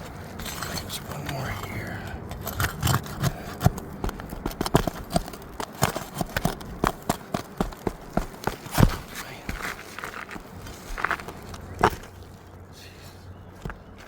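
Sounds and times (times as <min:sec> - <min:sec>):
pry bar clicking and scraping: 0:00.0 - 0:12.2.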